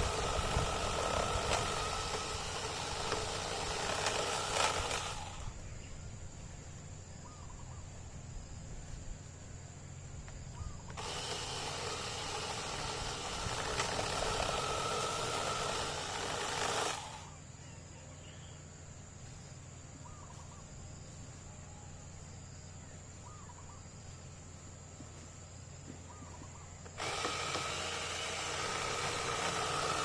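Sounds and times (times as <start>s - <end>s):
electric chainsaw running: 0.0s - 5.6s, 10.9s - 17.4s, 26.8s - 30.0s
steady low hum: 0.0s - 30.0s.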